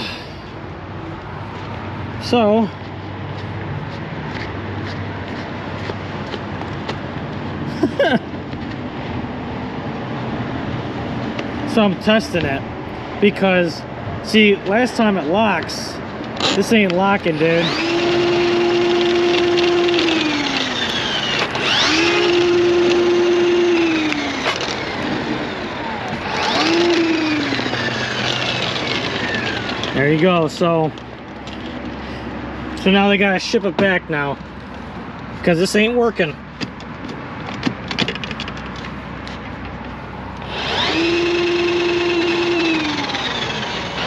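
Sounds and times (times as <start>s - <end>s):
drain snake motor spinning: 16.6s - 30.1s, 40.4s - 44.0s.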